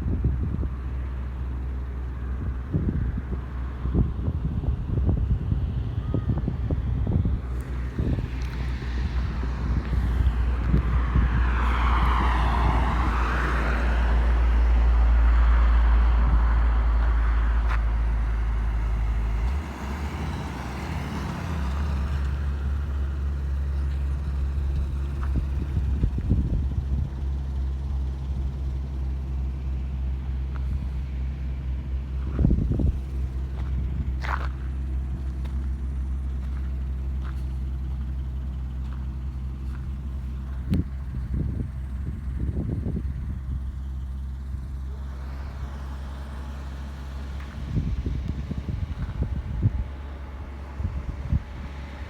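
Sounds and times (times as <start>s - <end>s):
traffic rumble: 0.0s - 52.0s
vehicle passing close: 6.8s - 27.3s.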